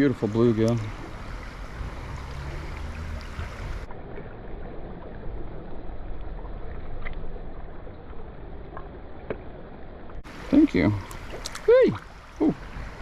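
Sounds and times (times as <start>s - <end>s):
river water flowing: 0.0s - 13.0s
low rumble: 0.9s - 10.3s.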